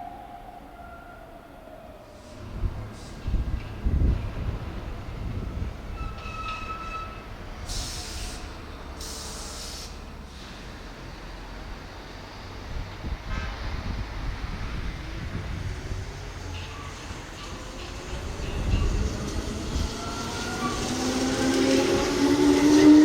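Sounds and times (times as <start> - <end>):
electric train rumble: 0.0 - 23.0
short bursts of hiss: 9.0 - 10.0.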